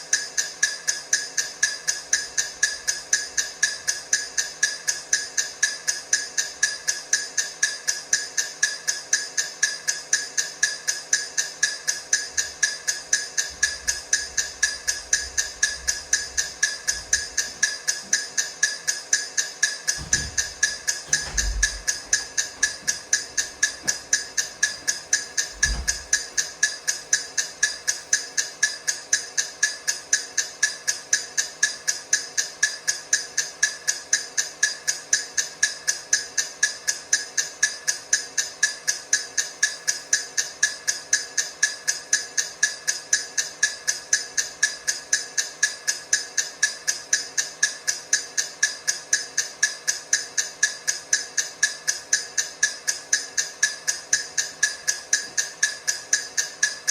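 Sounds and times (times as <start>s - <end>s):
brief low thump: 20.0s - 25.0s.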